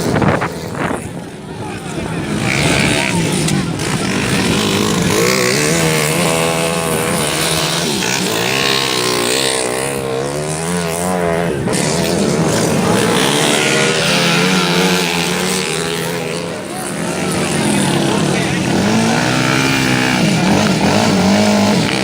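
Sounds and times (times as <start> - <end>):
motorcycle engines revving: 0.0 - 22.0.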